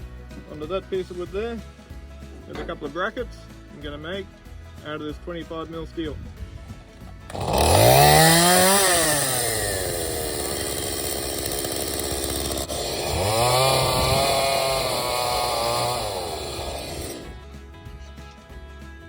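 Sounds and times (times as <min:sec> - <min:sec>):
chainsaw cutting wood: 0:07.2 - 0:17.4.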